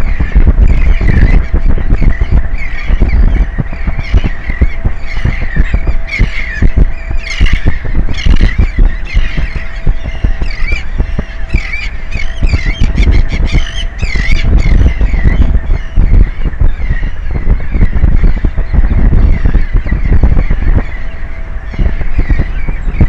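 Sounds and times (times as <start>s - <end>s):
birds honking squawks: 0.0s - 23.0s
faint steady hum: 0.0s - 23.0s
wind buffeting microphone: 0.0s - 23.0s.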